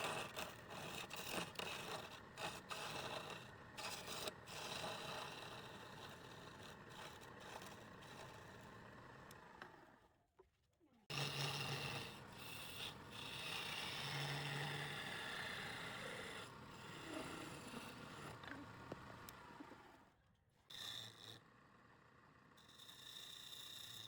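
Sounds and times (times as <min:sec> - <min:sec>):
lathe tool scraping wood: 0:00.0 - 0:08.8, 0:11.1 - 0:19.2.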